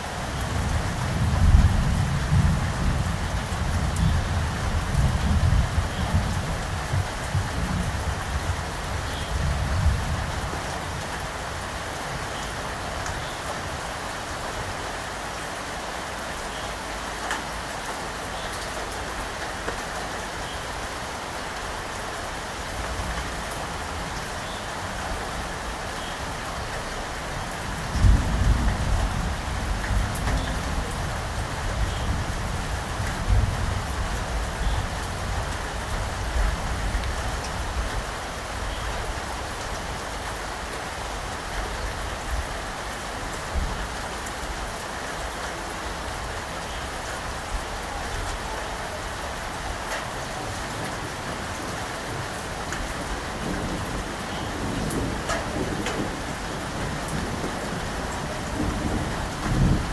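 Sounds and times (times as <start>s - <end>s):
steady rain falling: 0.0s - 59.9s
thunder rumbling: 0.2s - 12.3s, 26.4s - 38.7s, 47.2s - 59.9s.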